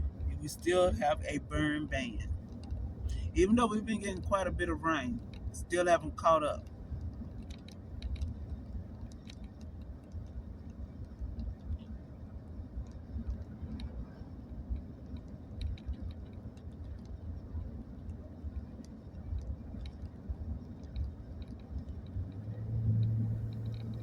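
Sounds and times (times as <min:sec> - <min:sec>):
light ticks and rattles: 0:00.0 - 0:24.0
road rumble inside vehicle: 0:00.0 - 0:24.0.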